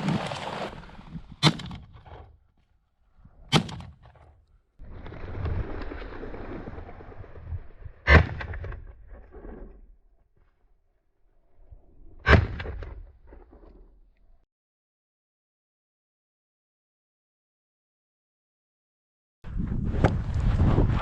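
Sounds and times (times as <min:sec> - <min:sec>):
sharp impacts: 0:01.4 - 0:02.2, 0:03.5 - 0:04.2
wind noise on microphone: 0:19.5 - 0:21.0.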